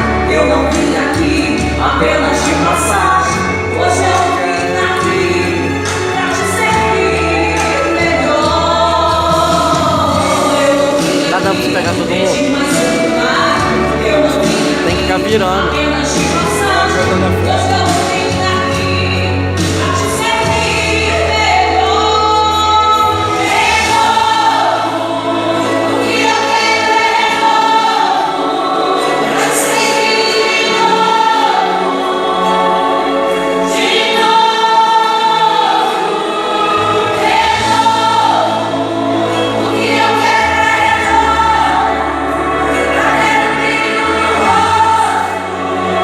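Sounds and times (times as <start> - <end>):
choir singing: 0.0 - 46.0
bass line: 6.6 - 26.2.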